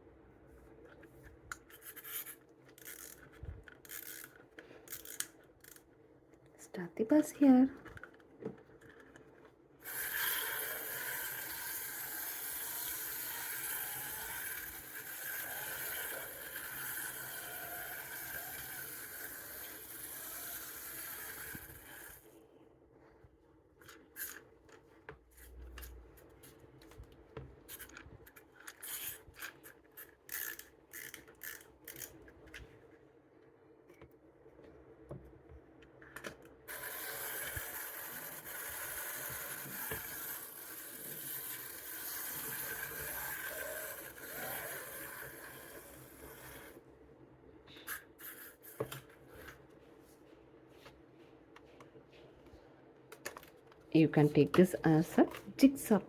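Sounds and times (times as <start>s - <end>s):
clockwork toy motor whirring: 1.7s - 5.8s, 9.8s - 22.4s, 24.1s - 24.4s, 27.7s - 32.2s, 36.7s - 46.8s, 47.8s - 49.0s.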